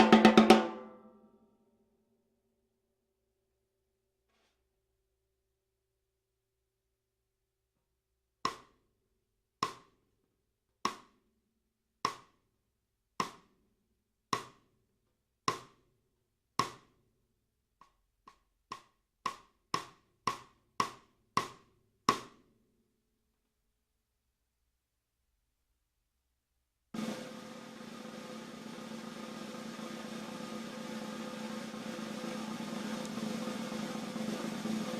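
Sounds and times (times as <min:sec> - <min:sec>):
snare drum hits: 0:00.0 - 0:01.0, 0:27.0 - 0:34.9.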